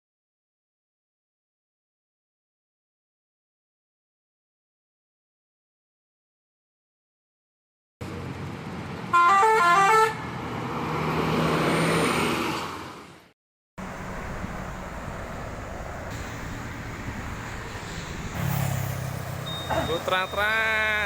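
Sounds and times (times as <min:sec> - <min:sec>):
bus engine passing: 0:08.0 - 0:21.0
road traffic noise: 0:08.0 - 0:21.0
musical bus horn: 0:09.1 - 0:10.4.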